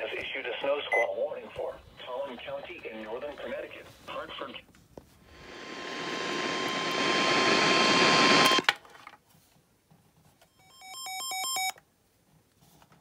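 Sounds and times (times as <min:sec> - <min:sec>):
radio static hiss: 0:05.3 - 0:08.6
steady high tone: 0:05.3 - 0:08.6.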